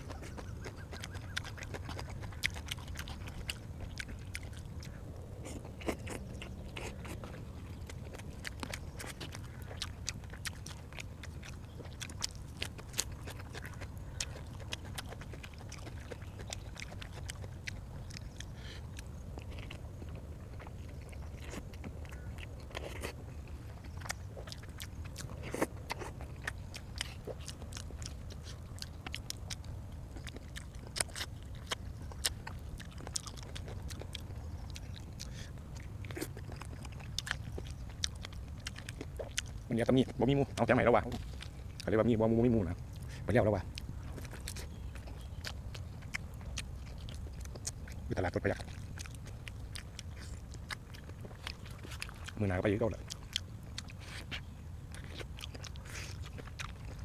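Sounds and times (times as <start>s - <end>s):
wet mouth clicks: 0.0s - 23.2s, 42.9s - 57.0s
person chewing food: 0.0s - 57.0s
steady low hum: 0.0s - 57.0s.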